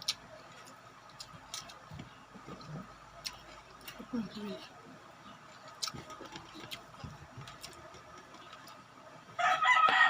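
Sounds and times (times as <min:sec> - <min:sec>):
eating clicks and smacks: 0:00.0 - 0:04.1
rooster crowing: 0:09.4 - 0:10.0.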